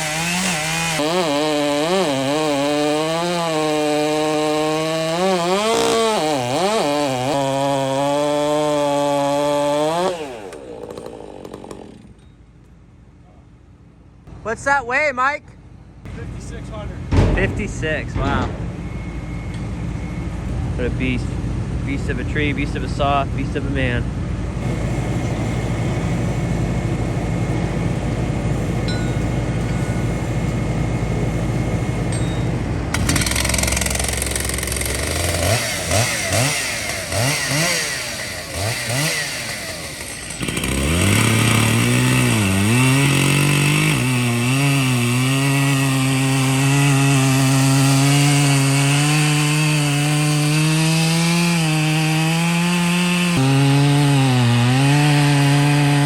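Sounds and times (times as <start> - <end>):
chainsaw cutting log: 0.0 - 12.2, 24.6 - 56.0
low engine hum: 15.7 - 35.0.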